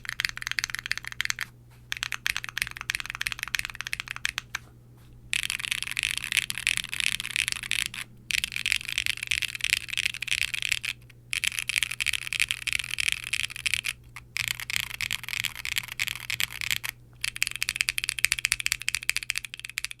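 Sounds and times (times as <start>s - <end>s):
mechanical keyboard typing: 0.0s - 4.6s, 5.3s - 20.0s.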